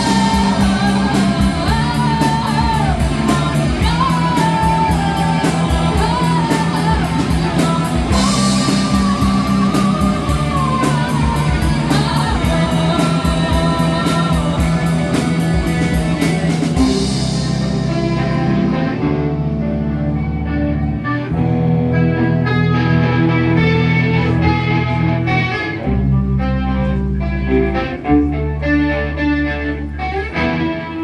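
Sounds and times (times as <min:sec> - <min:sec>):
rock band playing live: 0:00.0 - 0:31.0.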